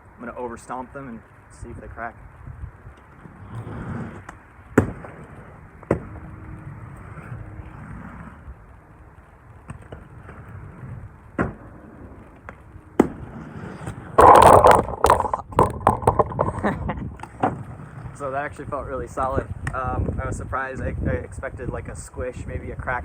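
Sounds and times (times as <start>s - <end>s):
skate wheels rolling on pavement: 0.0s - 23.0s
skates landing clacks: 3.2s - 6.2s, 9.6s - 17.7s.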